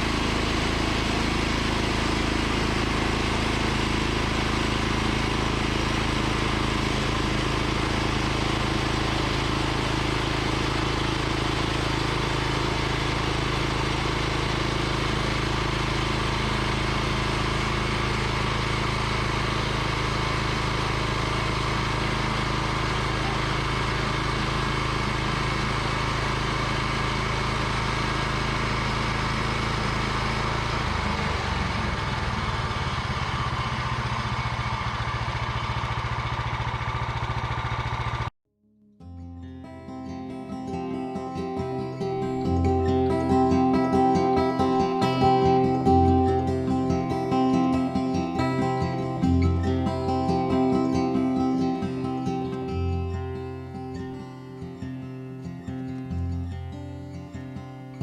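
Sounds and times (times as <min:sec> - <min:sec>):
sawmill engine running: 0:00.0 - 0:38.3, 0:39.6 - 0:57.7.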